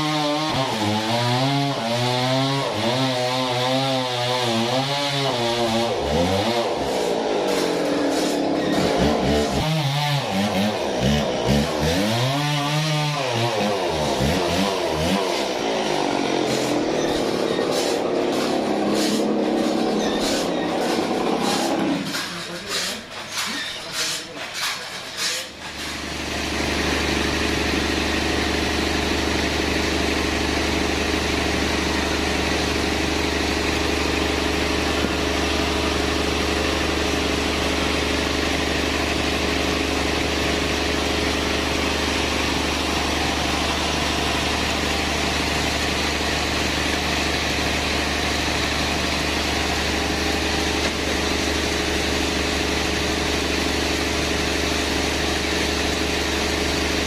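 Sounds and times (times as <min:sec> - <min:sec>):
sawmill machinery humming: 0:00.0 - 0:57.0.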